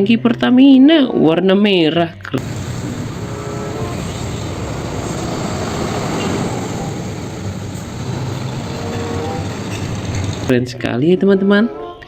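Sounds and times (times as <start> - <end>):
faint hum: 2.4 - 10.5
truck engine rumble: 2.4 - 10.5.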